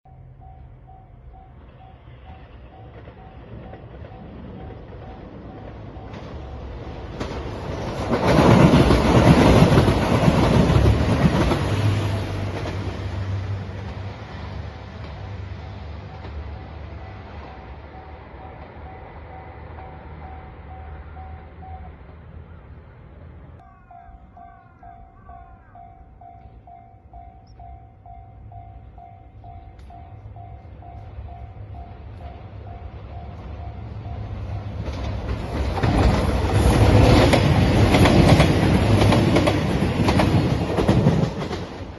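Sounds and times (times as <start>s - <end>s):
diesel train passing: 0.1s - 41.9s
wheels clattering over rails: 1.5s - 20.6s, 31.1s - 41.9s
level crossing bell ringing: 23.9s - 34.8s.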